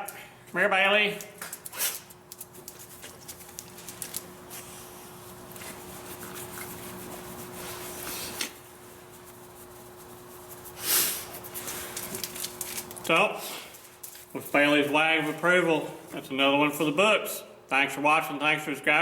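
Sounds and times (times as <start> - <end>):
rubbing and rustling of dog: 1.6 - 15.6.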